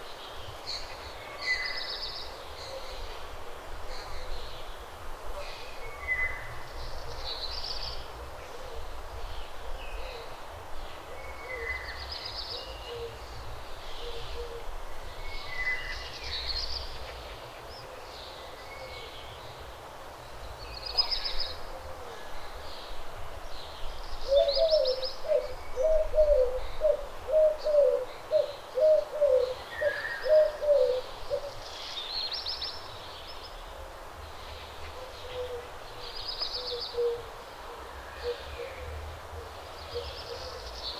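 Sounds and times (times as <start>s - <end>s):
songbirds chirping and whistling: 23.6s - 33.5s, 34.3s - 37.3s.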